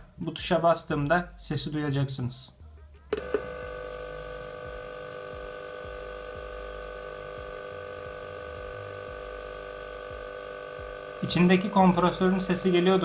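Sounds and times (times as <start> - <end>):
small air compressor humming: 3.1 - 13.0.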